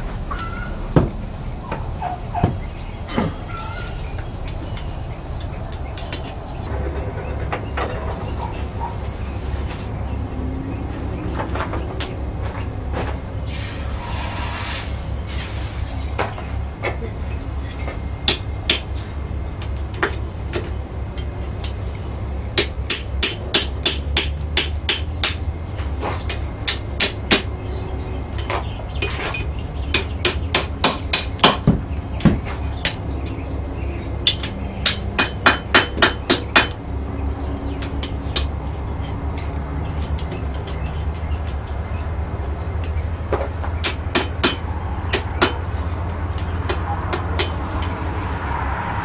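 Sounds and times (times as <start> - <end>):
steady low hum: 0.0 - 48.5
hammer striking steel on anvil: 18.2 - 18.9, 22.6 - 25.4, 34.2 - 36.8, 43.8 - 48.0.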